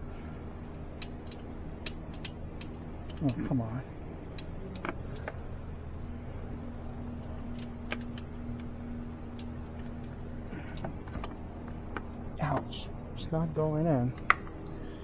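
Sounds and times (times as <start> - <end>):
steady low hum: 0.0 - 15.0
metal parts and hand tools clicking: 0.9 - 5.5, 7.1 - 12.1.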